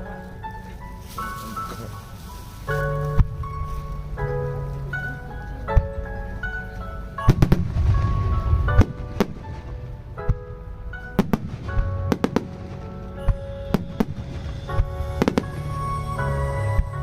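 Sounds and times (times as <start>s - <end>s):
music: 0.0s - 17.0s
fireworks bangs: 7.2s - 15.8s.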